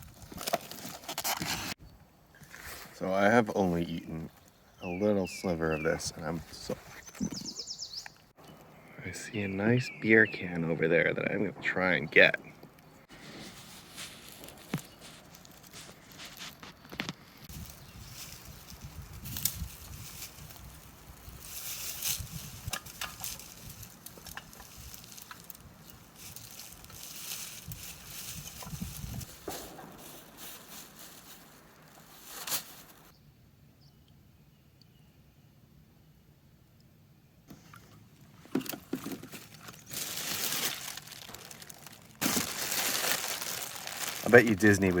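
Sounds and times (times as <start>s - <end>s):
footsteps crunching dry leaves: 13.1s - 33.1s, 39.2s - 45.0s
twigs snapping: 14.0s - 33.1s.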